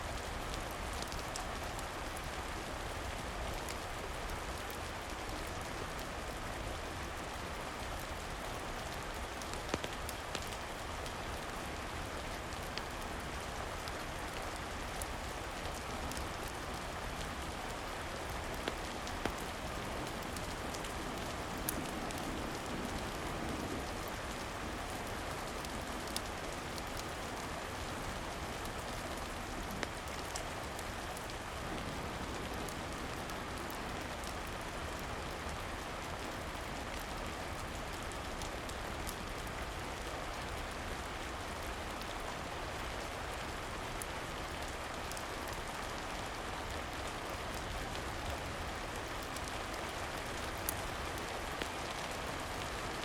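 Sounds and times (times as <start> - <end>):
steady rain falling: 0.0 - 53.0
wood fire crackling: 0.2 - 42.2, 43.0 - 53.0.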